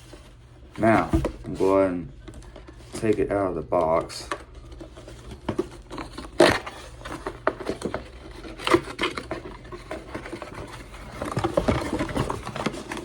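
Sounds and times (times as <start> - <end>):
cardboard box scraping and rustling: 4.8 - 13.0.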